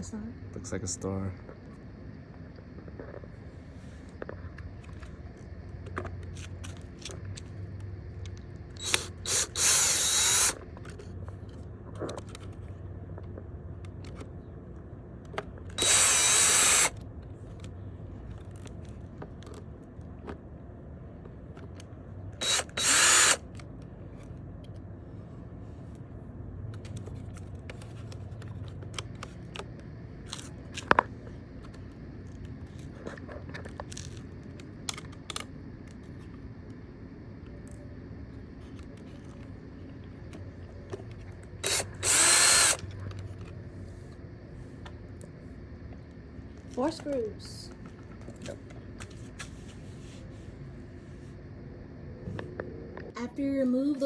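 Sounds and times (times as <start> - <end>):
cordless drill running: 8.7 - 10.7, 15.7 - 17.0, 22.4 - 23.6, 41.6 - 43.3.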